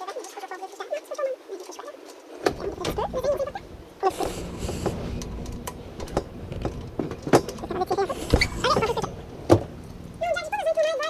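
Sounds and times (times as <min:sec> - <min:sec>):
low steady hum: 0:02.4 - 0:11.0.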